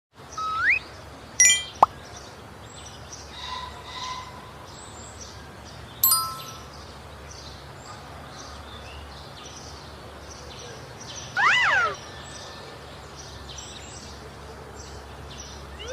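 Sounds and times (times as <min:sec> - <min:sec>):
bright chime: 0:01.4 - 0:01.9, 0:06.0 - 0:06.8
soft high chirps: 0:01.4 - 0:01.9, 0:06.0 - 0:06.9.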